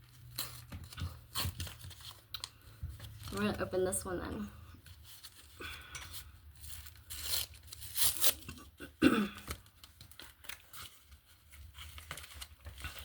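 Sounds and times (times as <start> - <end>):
packaging tearing and crinkling: 6.6 - 8.7.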